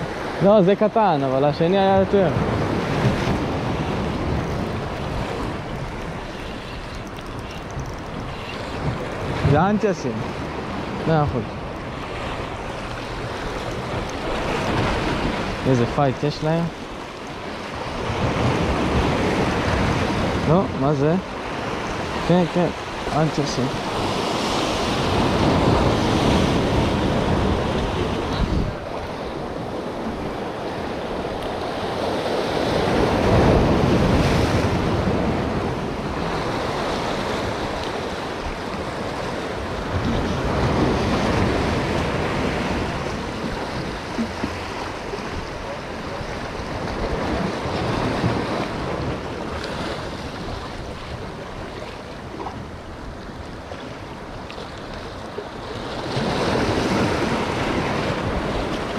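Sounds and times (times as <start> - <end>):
sea waves breaking: 0.0 - 58.9
wind buffeting microphone: 1.4 - 16.8, 23.8 - 53.7.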